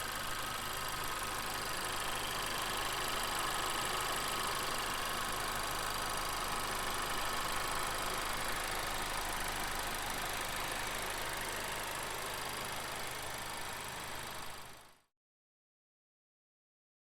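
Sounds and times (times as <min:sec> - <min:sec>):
car engine idling: 0:00.1 - 0:14.7.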